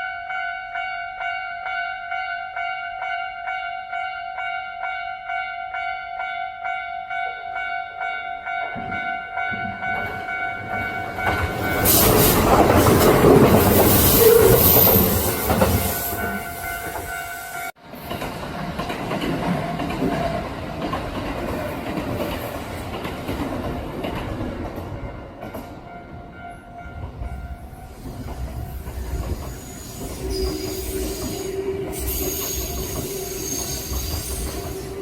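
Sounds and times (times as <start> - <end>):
electric train passing: 8.7 - 35.0
wheels clacking over rail joints: 9.5 - 17.2, 17.8 - 26.0, 28.0 - 35.0.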